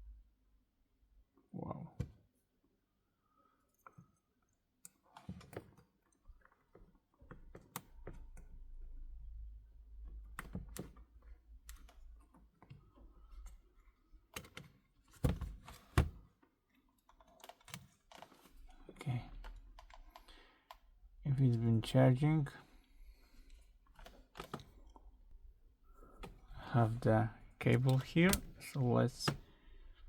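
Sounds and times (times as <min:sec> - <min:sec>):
small parts clicking and tapping: 0:27.6 - 0:29.6.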